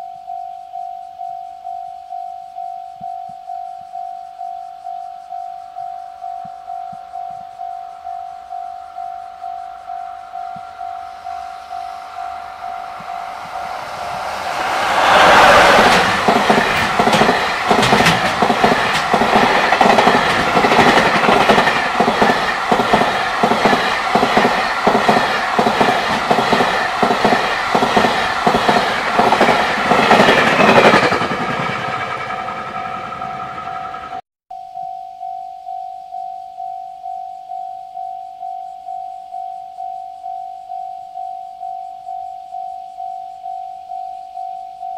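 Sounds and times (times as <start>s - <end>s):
crossing warning bell dinging: 5.9s - 34.2s
train wheels clacking over rail joints: 13.2s - 34.2s.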